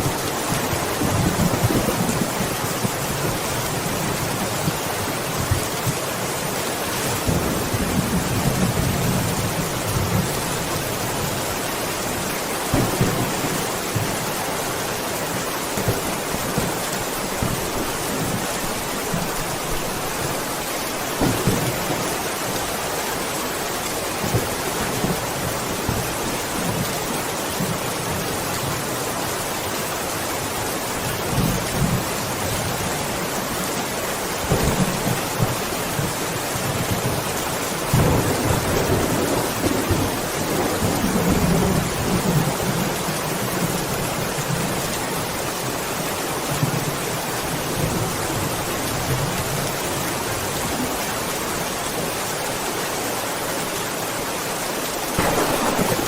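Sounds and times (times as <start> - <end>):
steady rain hissing: 0.0 - 56.0
thunder rumbling: 55.2 - 56.0.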